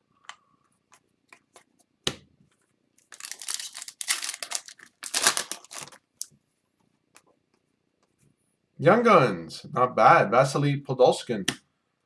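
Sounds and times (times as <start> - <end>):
foil wrapper crinkling and tearing: 3.1 - 6.3.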